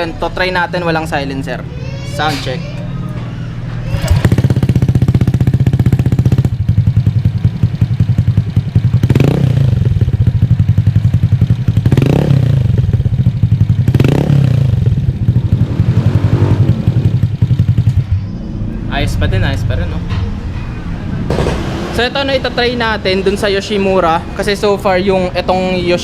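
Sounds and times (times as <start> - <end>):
scooter engine revving: 3.1 - 18.2
scooter engine idling loudly: 3.9 - 17.9.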